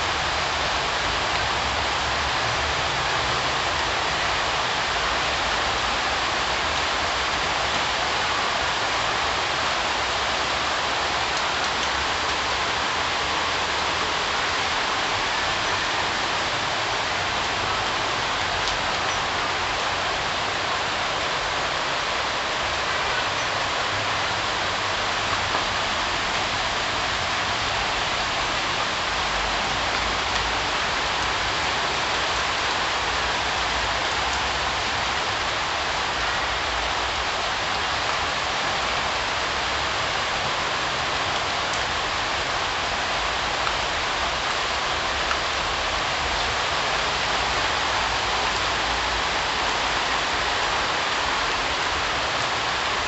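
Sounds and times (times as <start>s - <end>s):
steady rain pattering: 0.0s - 53.0s.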